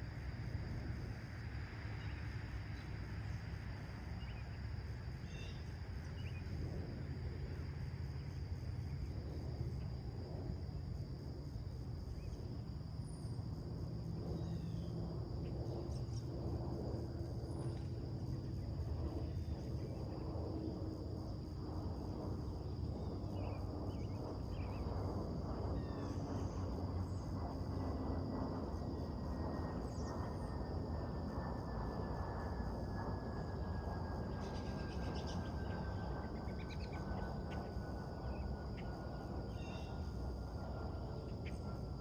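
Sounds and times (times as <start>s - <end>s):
low rumble with humming drone: 0.0s - 42.0s
high-pitched whine: 11.4s - 42.0s.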